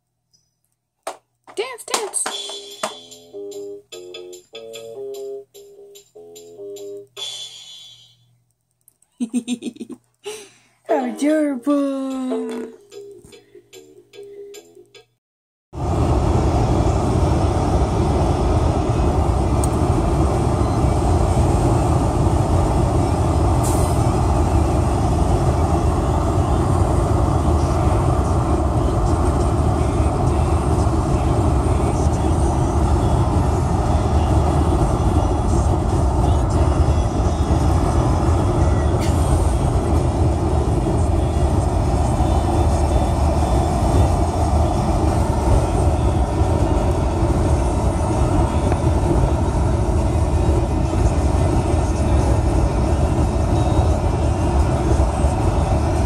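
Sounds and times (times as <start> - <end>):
loud low rumbling: 15.8 - 56.0.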